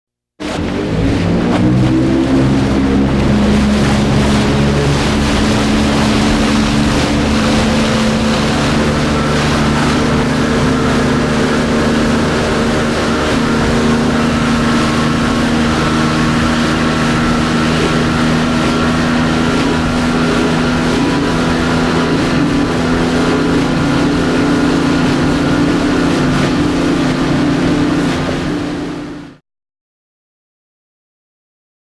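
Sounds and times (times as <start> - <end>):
rushing noise: 0.4 - 23.2
speedboat engine droning: 0.4 - 29.4.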